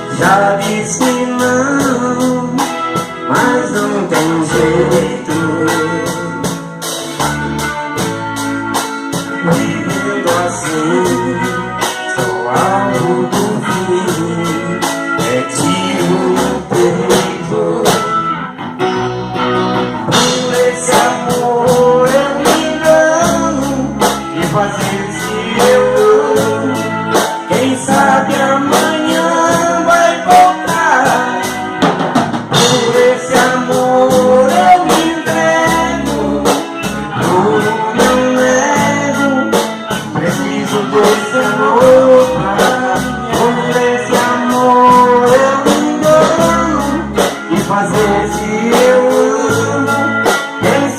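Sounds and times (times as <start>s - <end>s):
guitar melody: 0.0s - 50.9s
drum beat: 20.1s - 36.6s.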